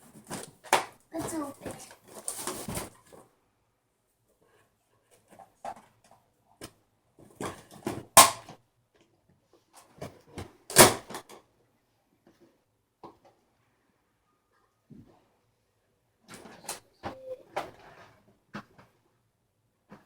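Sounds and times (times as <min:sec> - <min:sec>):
cardboard packaging rustling and knocking: 0:00.0 - 0:03.2.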